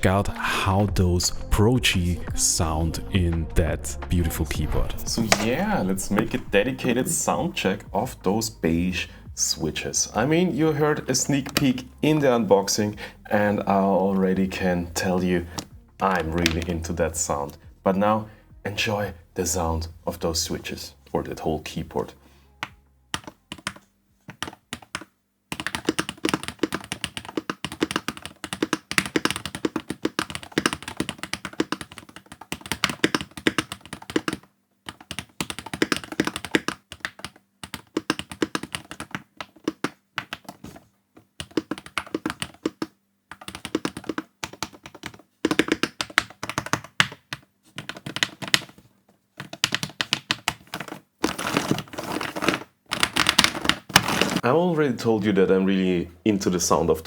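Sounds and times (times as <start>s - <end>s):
keyboard typing: 4.1s - 7.4s, 11.0s - 12.8s, 13.5s - 16.8s, 22.6s - 48.8s, 49.4s - 54.4s.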